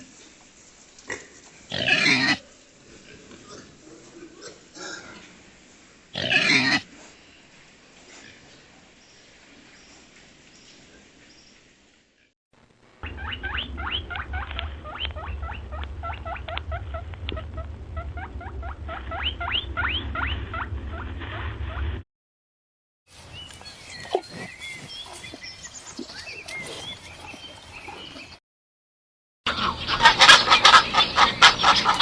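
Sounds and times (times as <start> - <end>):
low hum: 12.6 - 22.0.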